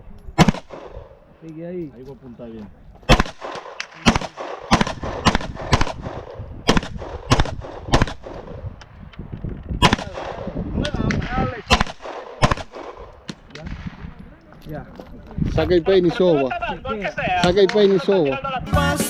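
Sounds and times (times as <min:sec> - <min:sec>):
gunshots: 0:00.4 - 0:01.1, 0:03.1 - 0:08.7, 0:09.8 - 0:14.1.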